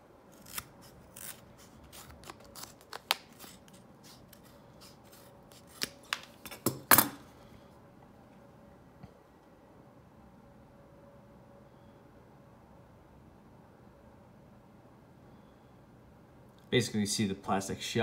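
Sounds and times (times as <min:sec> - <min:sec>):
shears snipping through leather: 0:00.4 - 0:06.0.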